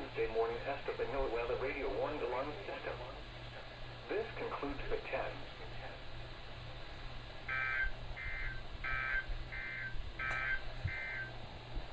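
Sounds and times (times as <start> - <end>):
harsh warbling data buzzes: 7.4 - 11.4.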